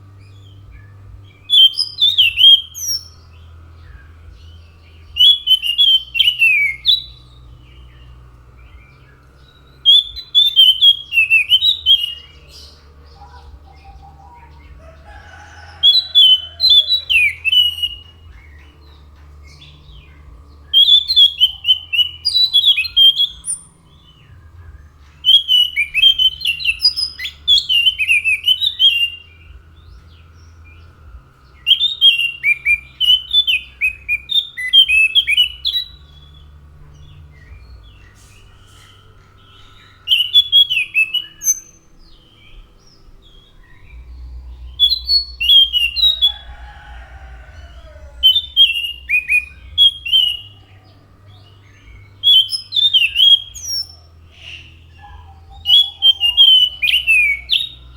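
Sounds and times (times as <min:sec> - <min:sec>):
thrush singing chirpy notes: 0:00.0 - 0:57.9.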